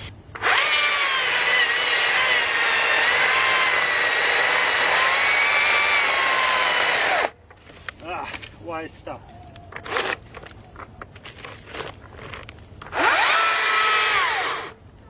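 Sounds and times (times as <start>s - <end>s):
electric chainsaw cutting log: 0.4s - 7.3s, 12.8s - 14.8s.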